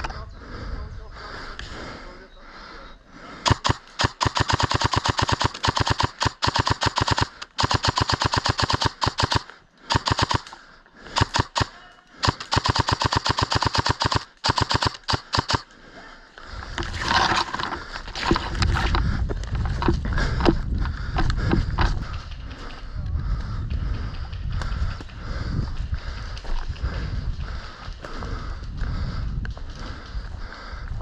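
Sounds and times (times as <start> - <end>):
airsoft gun firing full auto: 3.4 - 15.7
rough rustling noise: 16.7 - 20.6.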